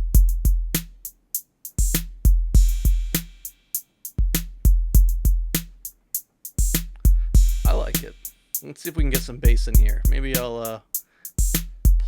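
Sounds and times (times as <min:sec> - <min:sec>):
deep booming kick drum: 0:00.0 - 0:00.8, 0:02.2 - 0:03.2, 0:04.2 - 0:05.6, 0:06.6 - 0:08.1, 0:09.0 - 0:10.3, 0:11.4 - 0:12.0
crisp ticking hi-hats: 0:00.0 - 0:12.0.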